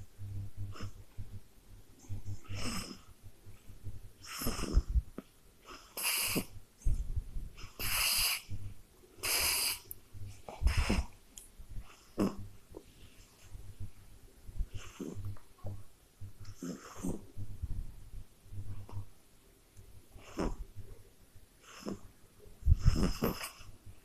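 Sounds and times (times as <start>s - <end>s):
baby snoring: 2.4s - 3.1s, 4.2s - 5.0s, 22.7s - 23.7s.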